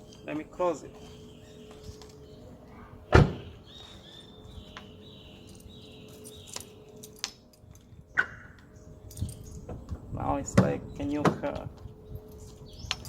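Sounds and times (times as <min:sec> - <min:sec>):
car door thud: 0:03.1 - 0:03.5.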